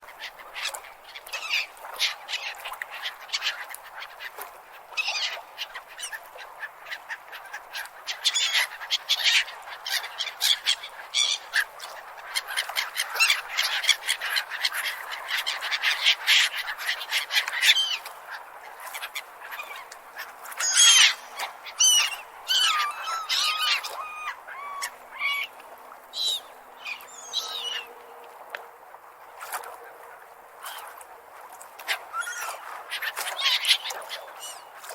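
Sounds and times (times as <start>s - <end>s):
gulls calling: 19.1s - 28.0s, 31.9s - 34.9s.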